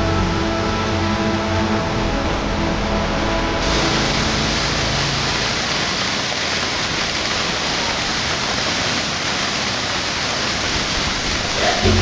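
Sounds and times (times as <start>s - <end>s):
waterfall rushing: 0.0s - 12.0s.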